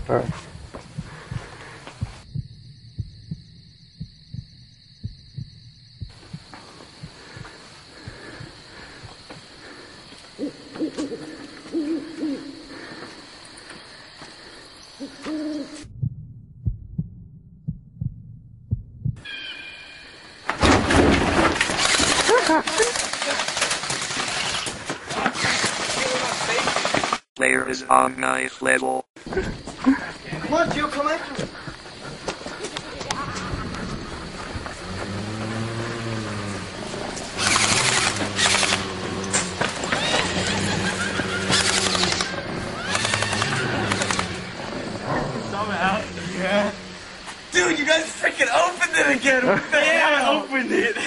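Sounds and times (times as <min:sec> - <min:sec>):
steady low hum: 0:00.0 - 0:10.6, 0:15.8 - 0:19.2
dull thumps: 0:00.2 - 0:09.2
low hooting call: 0:10.3 - 0:13.2, 0:15.0 - 0:18.4
loud rustling: 0:34.8 - 0:44.8
airsoft gun full-auto bursts: 0:37.4 - 0:38.9, 0:41.3 - 0:44.4.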